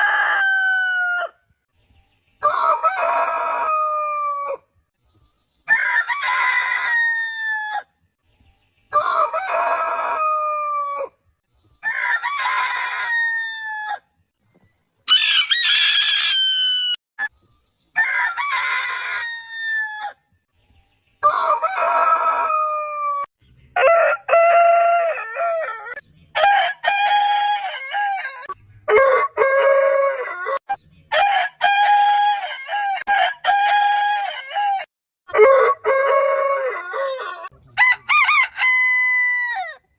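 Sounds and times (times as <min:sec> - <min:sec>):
roosters crowing: 0:00.0 - 0:01.4, 0:02.4 - 0:04.6, 0:05.7 - 0:07.9, 0:08.9 - 0:11.2, 0:11.8 - 0:14.1, 0:15.1 - 0:17.0, 0:18.0 - 0:20.2, 0:21.2 - 0:39.9.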